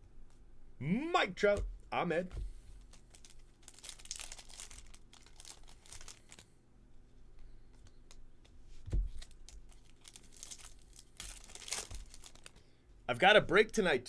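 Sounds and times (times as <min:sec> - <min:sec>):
cards rustling and clicking: 0:02.3 - 0:06.4, 0:07.7 - 0:12.6
wrappers tearing and crinkling: 0:02.7 - 0:06.5, 0:09.1 - 0:12.6
soft thud: 0:08.8 - 0:09.2.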